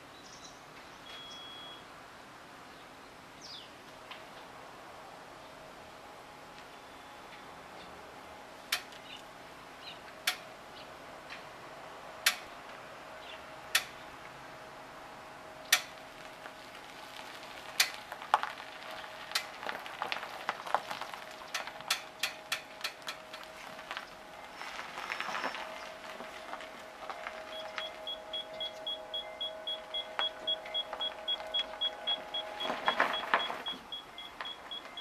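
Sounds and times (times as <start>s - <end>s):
sharp clicking from reversing car: 8.7s - 9.3s, 10.0s - 10.5s, 12.2s - 12.8s, 13.7s - 14.4s, 15.6s - 35.0s.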